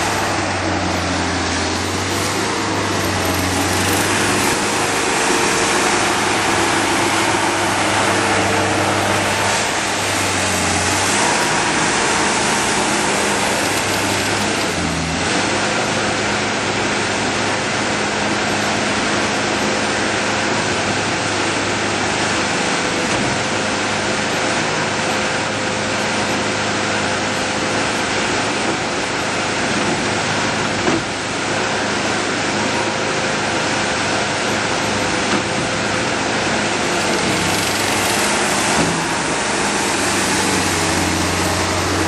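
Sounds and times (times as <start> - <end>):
diesel engine running: 0.0 - 42.0.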